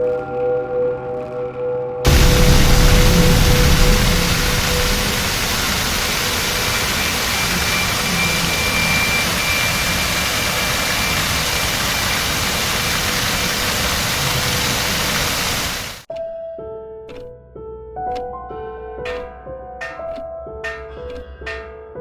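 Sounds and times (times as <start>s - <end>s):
steady rushing noise: 2.1s - 16.0s.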